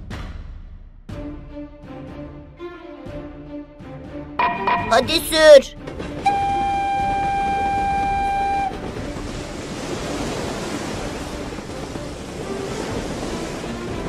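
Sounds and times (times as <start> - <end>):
cartoon vehicle horn: 6.2 - 8.7.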